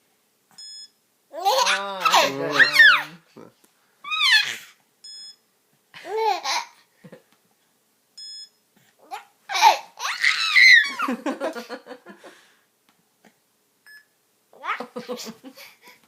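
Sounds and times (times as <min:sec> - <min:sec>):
baby laughing: 0:01.3 - 0:03.2, 0:06.0 - 0:06.8, 0:09.0 - 0:11.7, 0:14.6 - 0:15.7.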